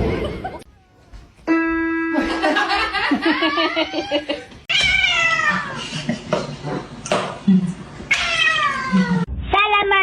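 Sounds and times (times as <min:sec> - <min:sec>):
steady held tone: 0:01.5 - 0:02.9
cat meowing: 0:04.7 - 0:05.8, 0:08.1 - 0:09.3.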